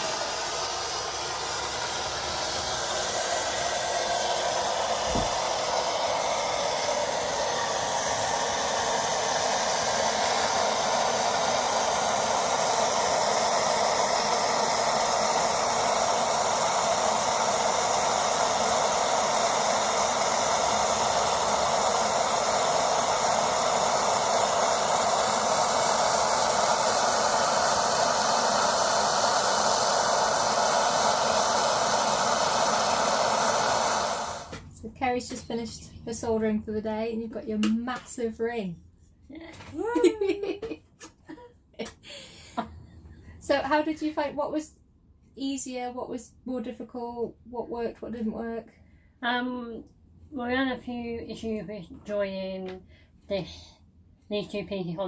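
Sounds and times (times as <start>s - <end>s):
gas torch flame hissing: 0.0s - 34.6s.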